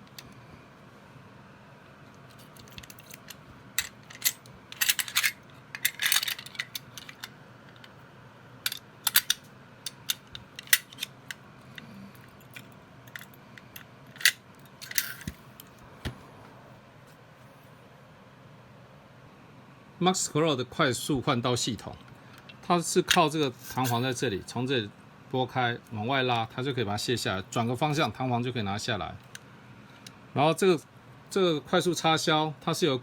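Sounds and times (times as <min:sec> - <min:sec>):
metallic clicks and clinks: 0:02.4 - 0:07.3, 0:08.7 - 0:11.1.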